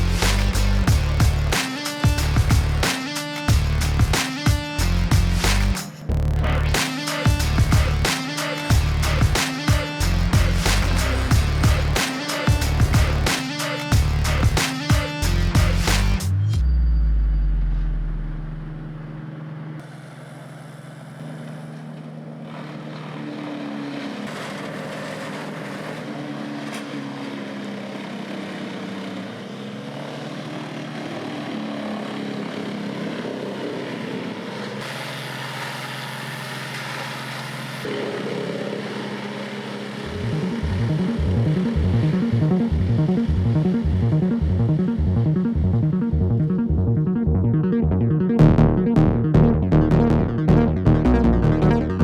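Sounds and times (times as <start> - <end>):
wood chipper engine humming: 34.8 - 37.8.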